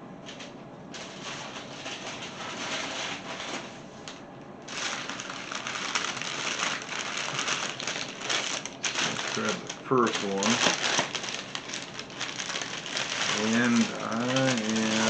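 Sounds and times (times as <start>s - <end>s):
packaging rustling and crinkling: 0.9s - 3.8s, 4.7s - 15.0s.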